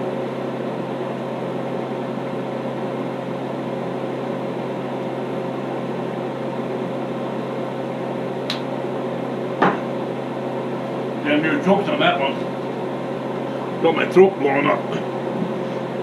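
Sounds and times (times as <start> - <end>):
steady mechanical hum: 0.0 - 16.0
sharp click: 8.5 - 8.7.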